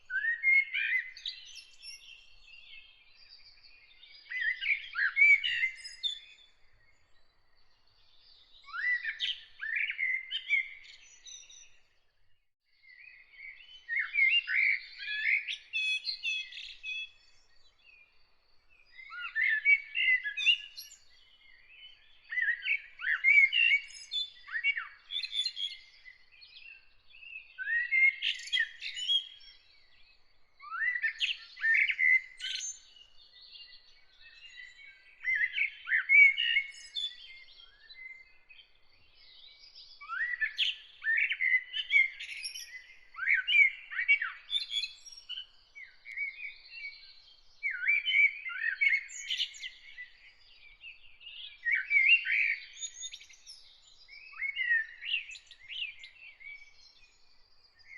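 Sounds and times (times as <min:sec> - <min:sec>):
songbird singing: 0:00.0 - 0:57.9.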